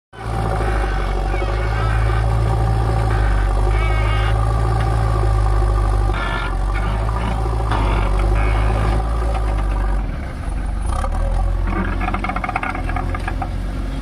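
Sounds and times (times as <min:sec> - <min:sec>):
diesel engine running: 0:00.1 - 0:14.0
high whine: 0:00.2 - 0:10.0.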